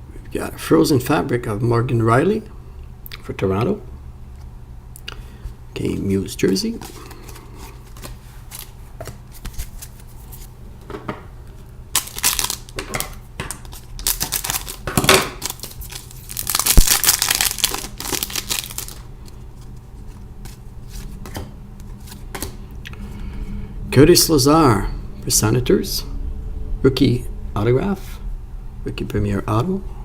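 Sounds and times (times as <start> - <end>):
card pack wrapper crinkling: 6.4 - 10.5, 11.9 - 21.4.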